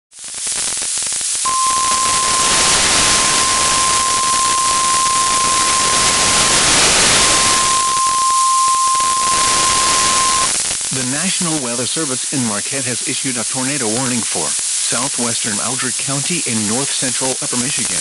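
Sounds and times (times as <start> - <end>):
radio static hiss: 0.3 - 18.0
steady alarm tone: 1.5 - 10.6.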